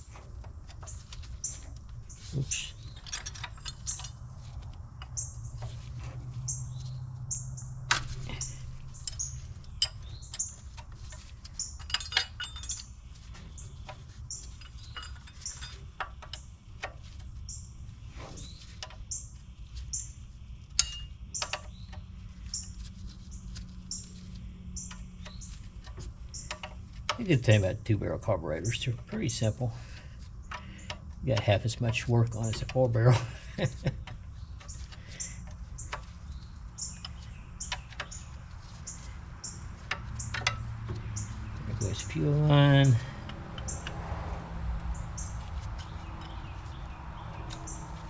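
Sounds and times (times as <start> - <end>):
metal tools clinking: 0.8 - 5.8, 7.9 - 13.0, 13.6 - 16.5, 20.8 - 21.7, 39.8 - 43.9.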